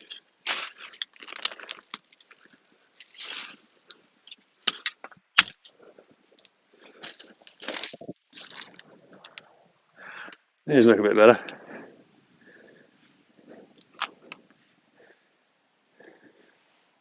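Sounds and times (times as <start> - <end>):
hands digging through soil: 0.0 - 4.0, 6.9 - 9.4.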